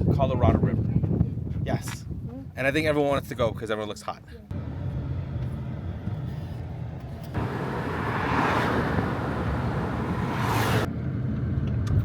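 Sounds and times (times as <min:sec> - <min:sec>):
vehicle passing: 0:07.4 - 0:10.9.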